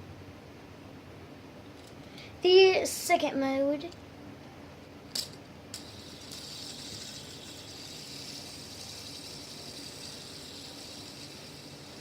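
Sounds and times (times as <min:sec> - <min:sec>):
fidget spinner whirring: 0:05.7 - 0:12.0.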